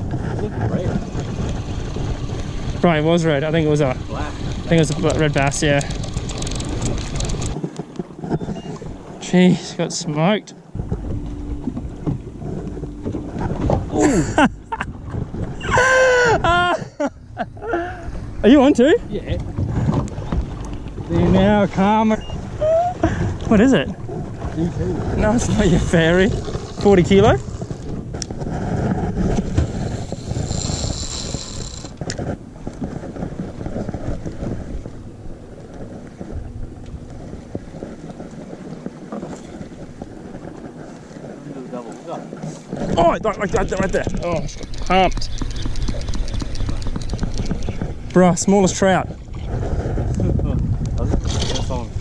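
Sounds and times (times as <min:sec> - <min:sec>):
water washing around boat: 0:00.0 - 0:52.0
wind rumble on microphone: 0:00.0 - 0:52.0
sharp clicks: 0:04.9 - 0:07.6, 0:44.5 - 0:47.8.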